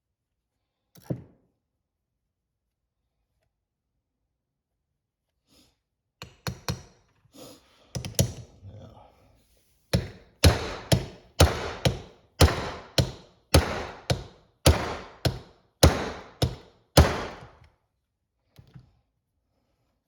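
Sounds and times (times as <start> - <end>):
hammer striking metal driver: 10.0 - 17.6.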